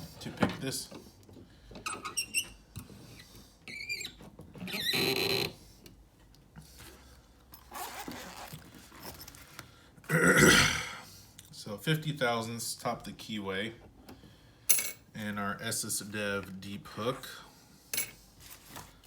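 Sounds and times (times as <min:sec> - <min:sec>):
metal tools clicking and scraping: 0:17.9 - 0:18.8.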